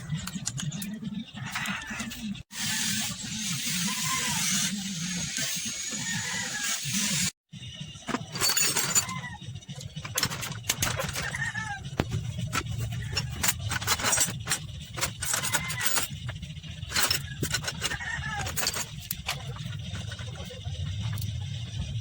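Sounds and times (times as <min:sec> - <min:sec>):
metal tools clinking: 0:08.1 - 0:21.4.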